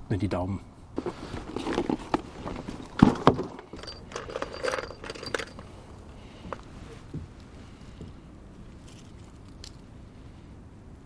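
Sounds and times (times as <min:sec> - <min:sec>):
gear clinking and knocking in boat: 0:01.0 - 0:08.2.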